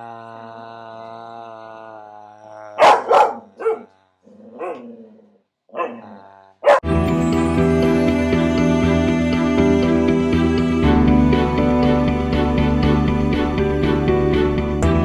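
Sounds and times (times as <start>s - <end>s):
dog barking: 2.8s - 3.9s, 4.5s - 5.0s, 5.7s - 6.8s
music: 6.8s - 15.0s.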